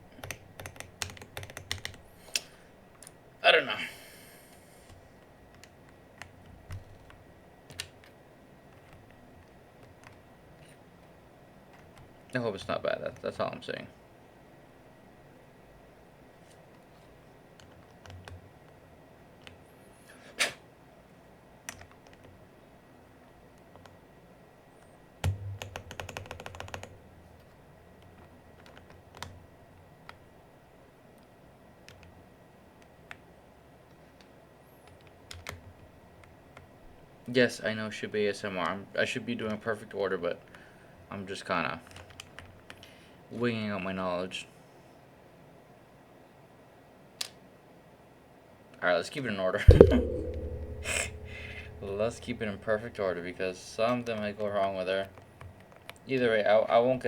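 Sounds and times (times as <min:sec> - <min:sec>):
keyboard keycaps clicking: 0:00.1 - 0:02.0, 0:05.5 - 0:10.2, 0:25.2 - 0:26.9
keycaps clicking onto keyboard: 0:00.1 - 0:02.0, 0:25.2 - 0:26.9.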